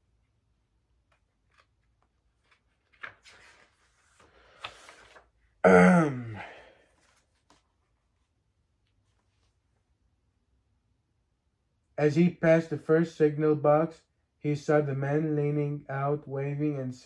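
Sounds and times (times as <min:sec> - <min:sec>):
person sighing: 0:05.6 - 0:06.8.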